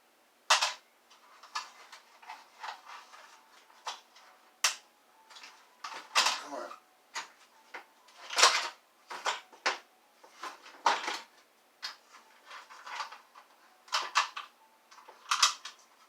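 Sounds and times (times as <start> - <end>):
plastic parts clattering and scraping: 0.5 - 7.4, 8.1 - 16.0.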